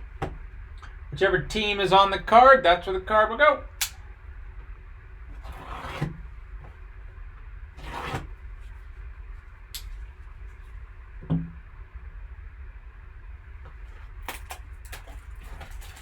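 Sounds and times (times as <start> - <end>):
low steady hum: 0.0 - 16.0
sharp click: 3.8 - 4.0.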